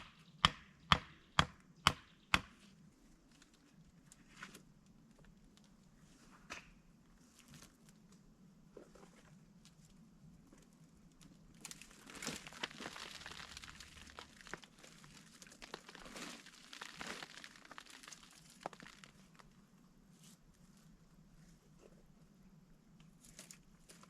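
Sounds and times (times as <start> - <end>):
crinkling and rustling: 7.2 - 22.1, 23.0 - 24.0.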